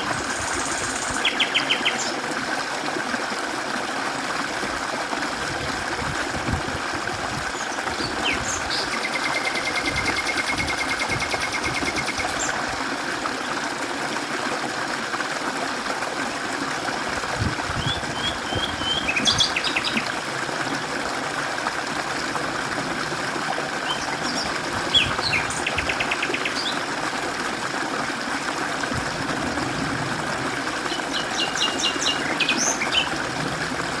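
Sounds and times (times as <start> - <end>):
mountain stream flowing: 0.0 - 34.0
bird trilling: 8.2 - 12.4.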